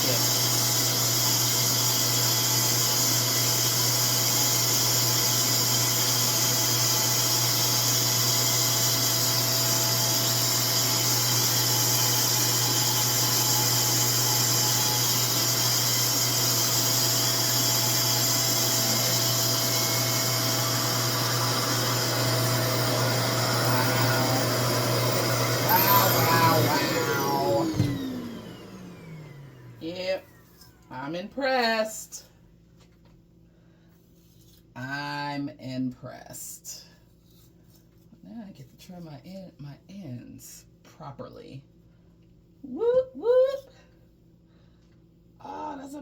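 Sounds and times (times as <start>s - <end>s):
hair dryer humming and hissing: 0.0s - 30.3s.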